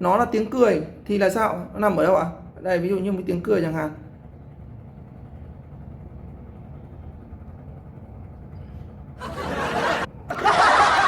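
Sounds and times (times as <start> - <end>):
low steady hum: 0.0 - 11.0
recorded laughter: 9.2 - 11.0.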